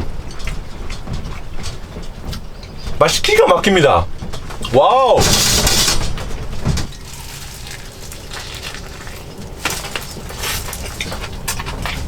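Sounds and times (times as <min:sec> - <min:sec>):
low steady rumble: 0:00.0 - 0:12.0
person chewing crunchy food: 0:06.9 - 0:12.0.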